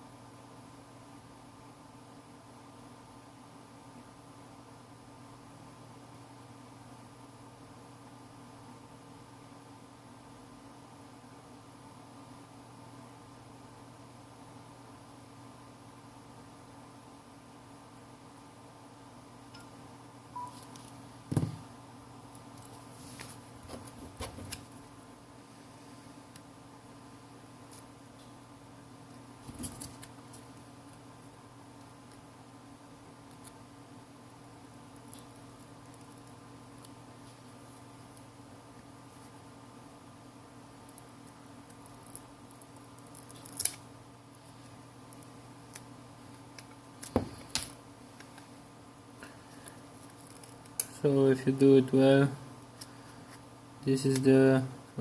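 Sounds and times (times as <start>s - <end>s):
faint steady hum: 0.0s - 55.0s
short beep: 20.4s - 20.6s.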